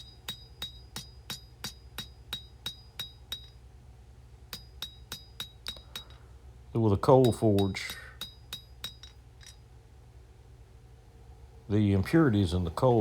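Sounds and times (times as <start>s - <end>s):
hammer striking steel on anvil: 0.0s - 3.6s, 4.5s - 6.2s, 7.2s - 9.6s.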